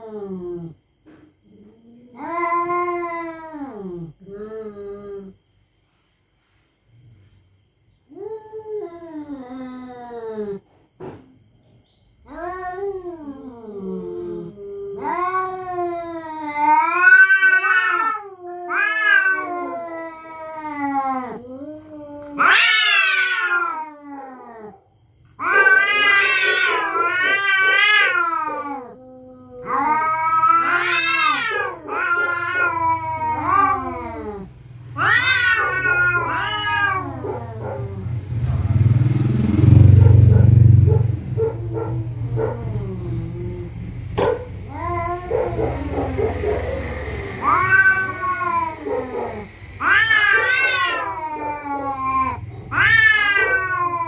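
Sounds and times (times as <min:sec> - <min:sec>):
cat growling: 0:00.0 - 0:00.8, 0:01.5 - 0:05.4, 0:12.3 - 0:24.8, 0:25.4 - 0:54.0
cats yowling: 0:02.1 - 0:04.1, 0:12.3 - 0:24.8, 0:25.4 - 0:38.3, 0:39.4 - 0:54.0.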